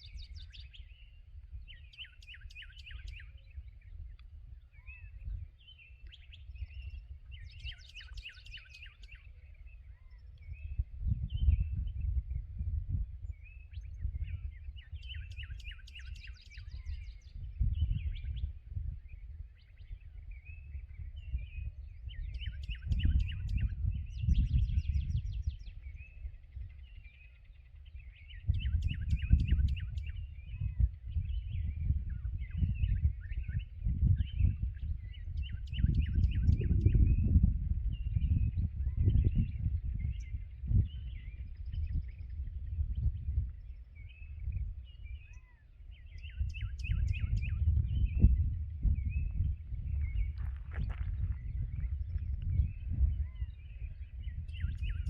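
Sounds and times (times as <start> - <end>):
birds twittering: 0.0 - 12.2, 13.2 - 55.0
songbirds singing: 0.0 - 55.0
low rumble: 47.4 - 55.0.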